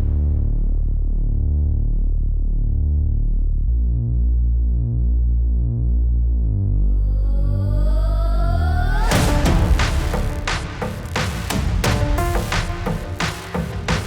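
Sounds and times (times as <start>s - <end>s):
electronic synthesizer music: 9.1s - 14.0s.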